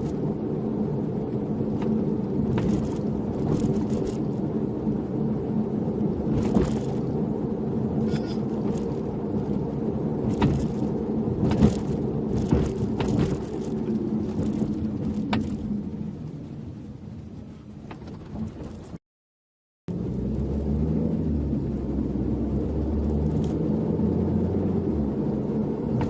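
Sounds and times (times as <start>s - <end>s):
car cabin road noise: 0.0s - 19.0s, 19.9s - 26.0s
sharp clicks and rattles: 1.7s - 4.4s, 8.4s - 9.5s, 10.2s - 15.6s.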